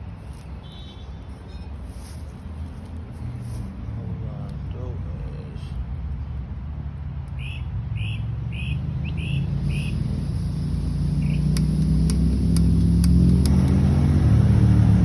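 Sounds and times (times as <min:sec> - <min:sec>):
bird chirping: 0:07.4 - 0:13.5
sharp clicks: 0:09.6 - 0:14.7.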